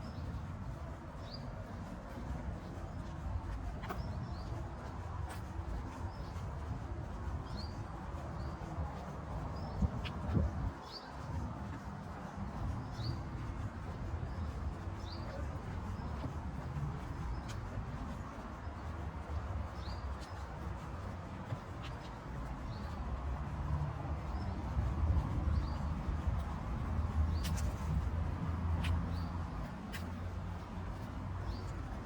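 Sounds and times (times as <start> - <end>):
steady low rumble: 0.0 - 32.0.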